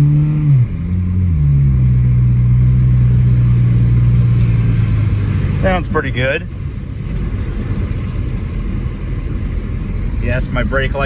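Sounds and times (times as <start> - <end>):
car engine accelerating: 0.0 - 11.0.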